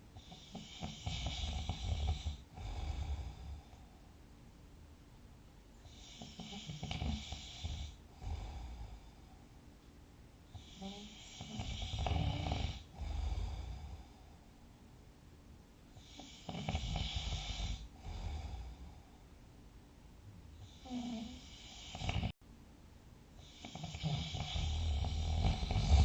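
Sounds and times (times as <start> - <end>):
quiet breathing: 0.0 - 4.4, 5.7 - 15.0, 15.9 - 19.7, 20.5 - 22.4, 23.4 - 26.0
person snoring: 0.2 - 3.8, 5.9 - 9.2, 10.5 - 14.3, 16.0 - 19.0, 20.6 - 22.4, 23.4 - 26.0.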